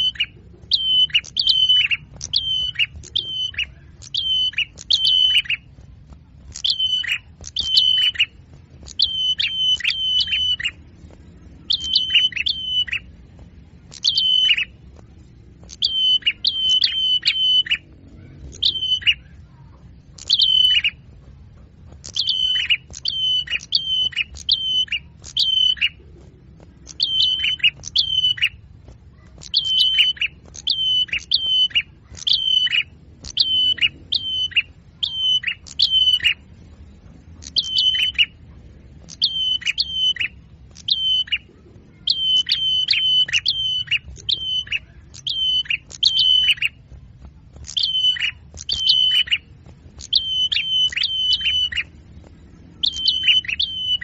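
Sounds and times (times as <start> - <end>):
small songbird high chirps: 0.0 - 54.0.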